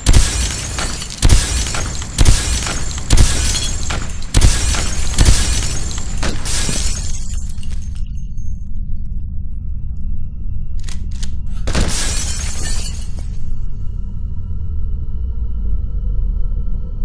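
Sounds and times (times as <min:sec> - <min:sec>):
gunshots: 0:00.0 - 0:08.0
glass shattering: 0:00.0 - 0:08.6, 0:11.7 - 0:13.6
steady low rumble: 0:00.0 - 0:17.0.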